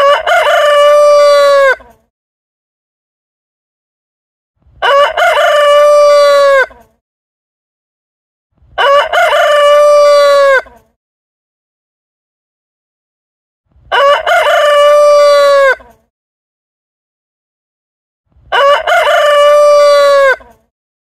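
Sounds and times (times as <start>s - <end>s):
rooster crowing: 0.0s - 1.8s, 4.8s - 6.7s, 8.8s - 10.8s, 13.9s - 15.9s, 18.5s - 20.5s.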